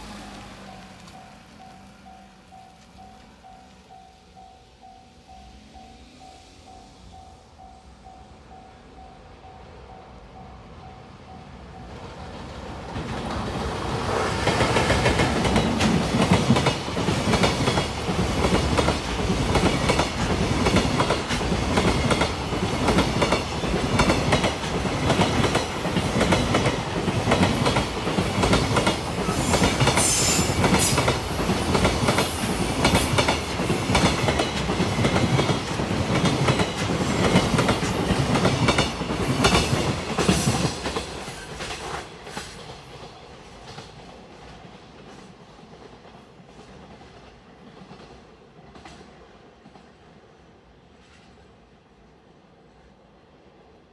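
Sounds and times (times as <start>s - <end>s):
freight train passing: 0.0s - 53.9s.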